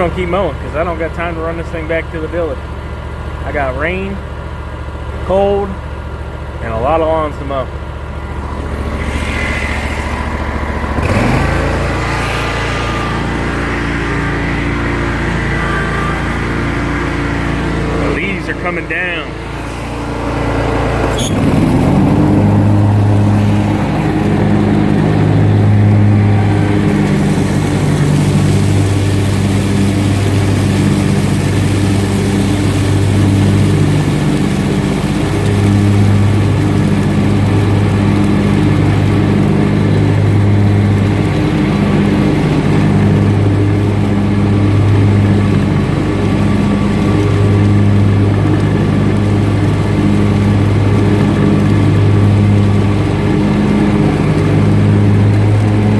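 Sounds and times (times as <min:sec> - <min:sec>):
mower engine running: 0:00.0 - 0:55.9.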